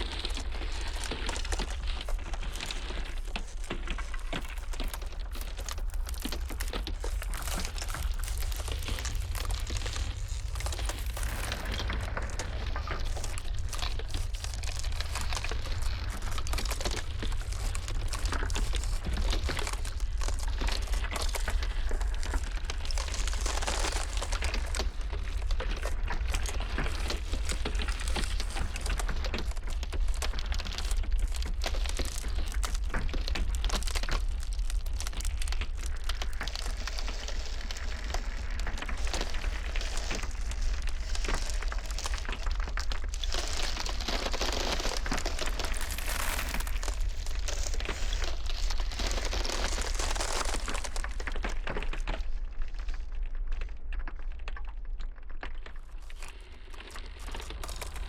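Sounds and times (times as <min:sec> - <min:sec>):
deep rumble of blizzard wind: 0:00.0 - 0:53.8
ice cracking: 0:00.0 - 0:58.0.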